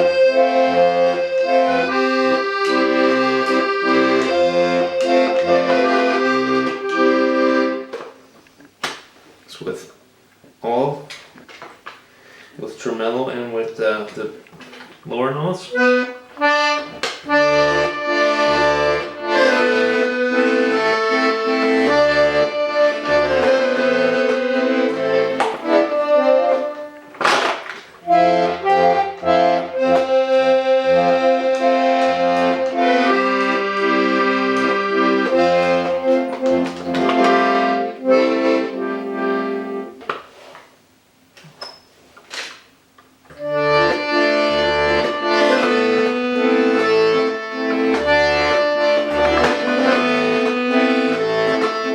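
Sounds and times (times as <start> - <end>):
accordion bass and chords pulsing: 0.0 - 8.2, 15.7 - 27.3, 28.0 - 40.0, 43.3 - 51.9
accordion melody: 0.0 - 8.4, 15.6 - 40.6, 43.3 - 51.9.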